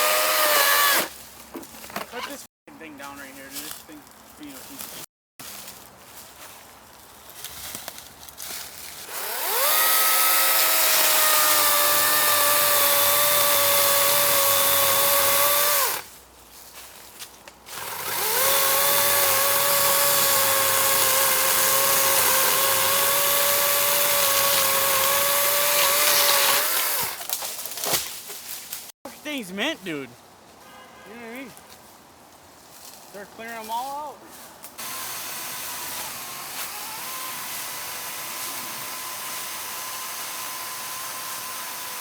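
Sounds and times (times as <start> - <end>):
electric chainsaw motor whine: 9.1 - 16.1, 17.7 - 27.2, 34.8 - 42.0.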